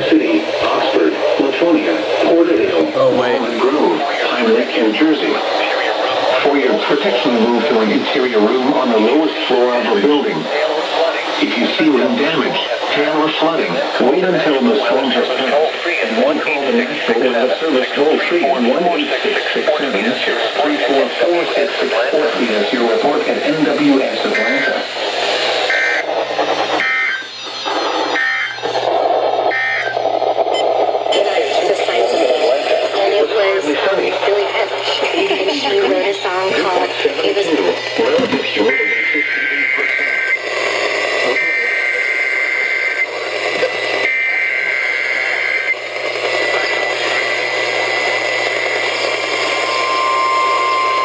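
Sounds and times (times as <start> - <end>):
steady radio hiss: 0.0 - 51.0
steady warning alarm tone: 31.2 - 51.0
weather radio two-tone beeps: 48.8 - 51.0.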